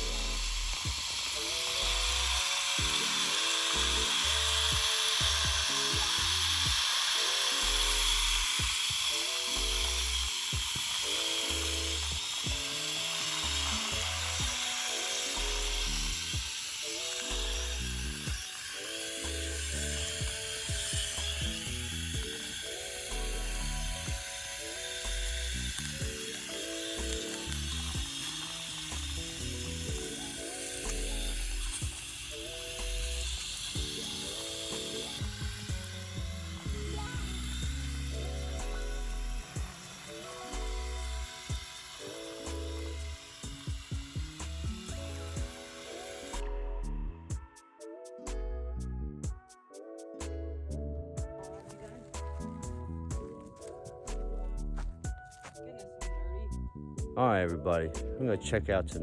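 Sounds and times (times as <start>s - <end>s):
background music with bass: 0.0s - 3.1s, 3.8s - 6.8s, 7.6s - 10.7s, 11.5s - 14.7s, 15.3s - 16.5s, 17.2s - 18.4s, 19.2s - 22.4s, 23.0s - 26.2s, 27.0s - 39.7s, 40.5s - 41.7s, 42.4s - 45.6s, 46.3s - 59.0s
steady hiss: 0.0s - 46.4s
melody over bass and beat: 30.8s - 39.8s.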